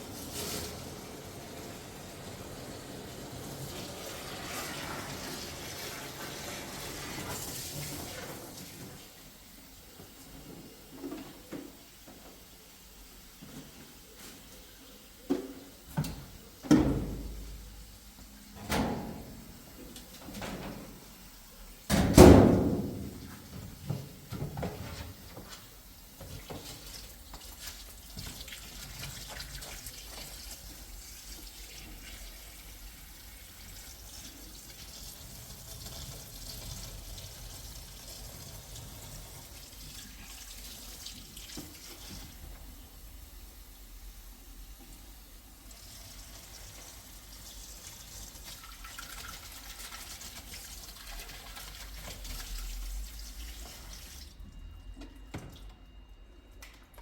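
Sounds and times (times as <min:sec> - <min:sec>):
tap water running into sink: 0:26.2 - 0:42.7, 0:45.6 - 0:54.3.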